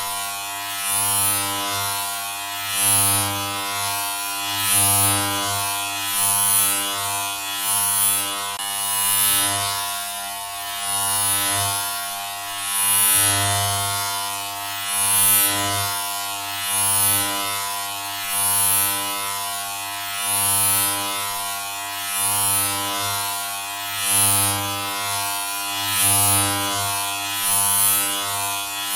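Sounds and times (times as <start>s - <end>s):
buzzy electric hum: 0.0s - 28.9s.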